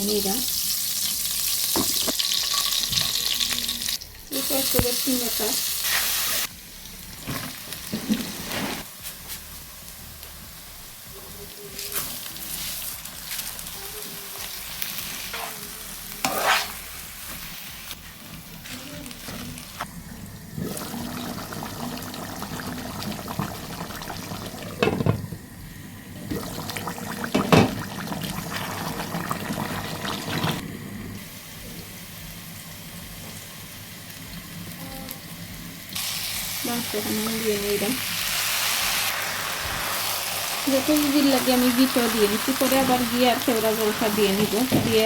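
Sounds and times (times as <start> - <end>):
meat sizzling in oil: 0.0 - 19.9, 35.4 - 45.0.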